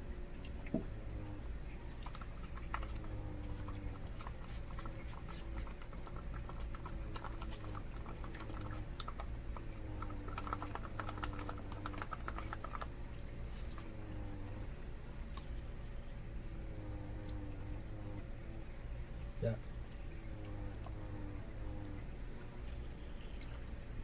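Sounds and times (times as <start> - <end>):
plastic spork scraping sauce: 1.8 - 13.9.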